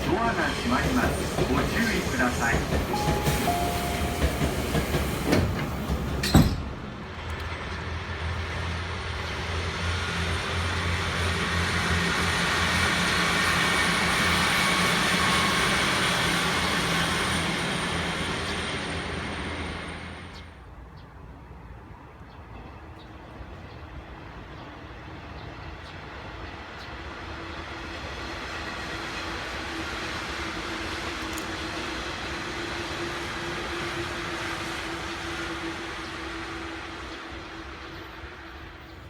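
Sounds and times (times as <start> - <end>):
train doors shutting: 0.0 - 8.0
electric train pulling out: 0.0 - 20.6.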